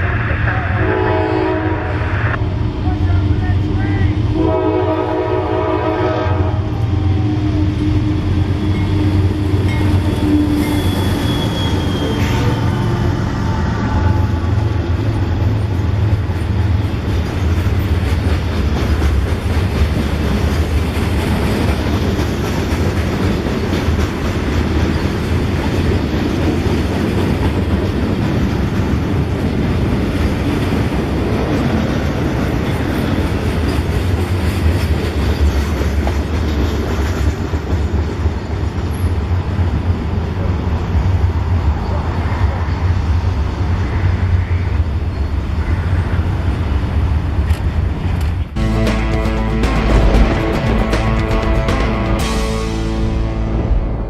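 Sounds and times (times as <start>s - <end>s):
train rumbling on rails: 0.0s - 54.0s
train wheel squeal: 6.9s - 14.4s
clickety-clack over rail joints: 15.1s - 39.8s, 47.4s - 48.6s.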